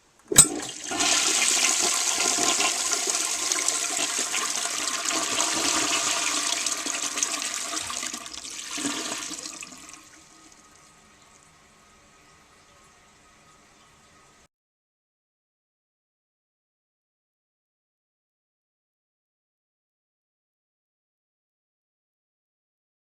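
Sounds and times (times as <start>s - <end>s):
toilet flushing: 0.3s - 10.8s.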